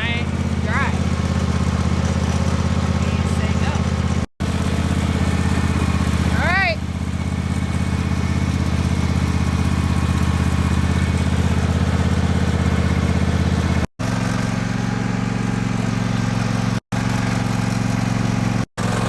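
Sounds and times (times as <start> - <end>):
small engine running: 0.0 - 19.0.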